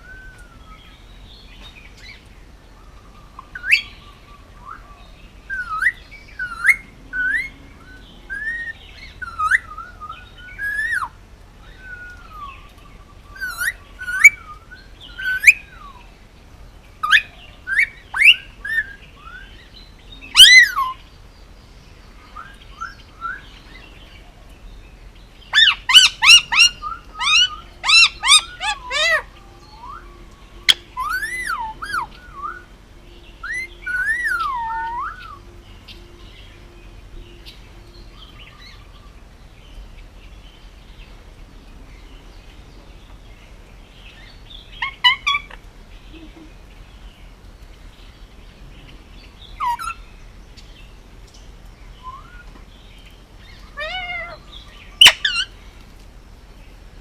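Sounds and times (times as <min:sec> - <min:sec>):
parakeet chirping and whistling: 0:25.5 - 0:32.7, 0:33.4 - 0:35.4, 0:53.8 - 0:54.4, 0:55.0 - 0:55.4.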